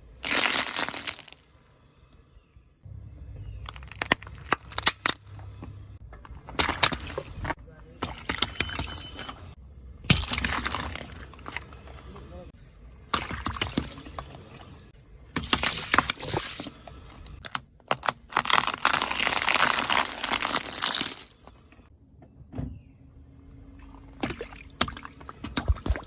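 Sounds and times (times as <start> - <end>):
objects crunching under tyre: 0.2 - 1.7, 3.5 - 12.4, 13.0 - 21.9, 23.8 - 26.0
thump: 22.5 - 22.8.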